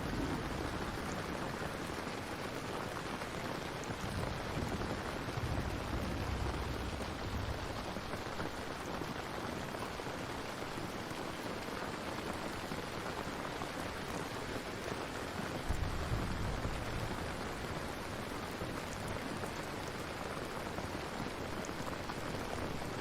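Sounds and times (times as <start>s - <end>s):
heavy rainfall: 0.0s - 23.0s
low rumble: 4.0s - 8.3s, 15.7s - 17.8s.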